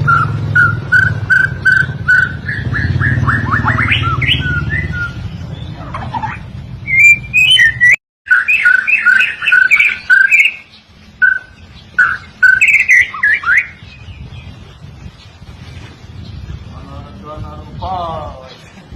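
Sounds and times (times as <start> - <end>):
bird singing whistled phrases: 0.0 - 14.5.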